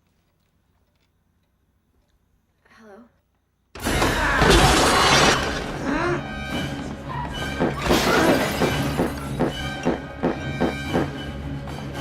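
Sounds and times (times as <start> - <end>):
loud noisy crash: 3.8 - 5.8
film score music: 3.8 - 12.0.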